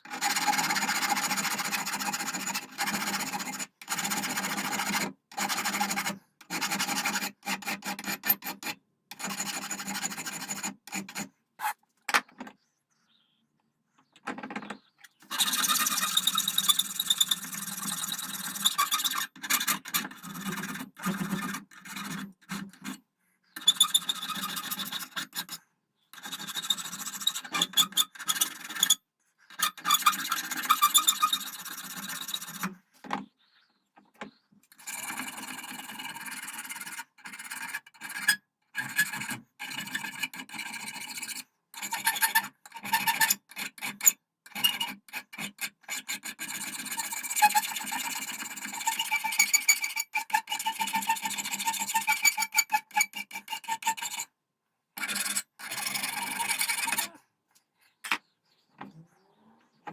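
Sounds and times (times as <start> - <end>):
hand file rasping over metal: 0.1 - 11.8, 15.2 - 23.0, 23.6 - 25.6, 26.2 - 32.8, 34.8 - 54.3, 55.0 - 57.2.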